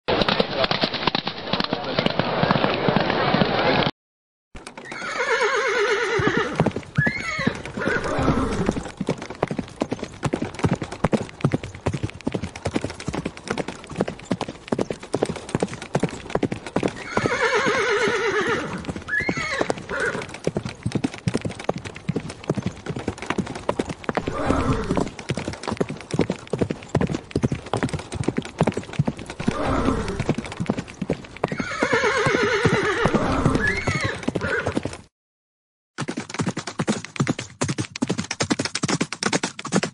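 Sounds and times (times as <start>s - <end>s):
horse hoofbeats galloping: 0.1s - 3.9s, 4.6s - 35.1s, 36.0s - 39.9s
horse neighing: 4.8s - 8.9s, 17.0s - 20.4s, 24.2s - 25.1s, 29.4s - 30.4s, 31.5s - 34.8s
horse whinnying: 4.8s - 8.9s, 16.8s - 20.4s, 24.2s - 25.2s, 29.4s - 30.4s, 31.4s - 34.8s.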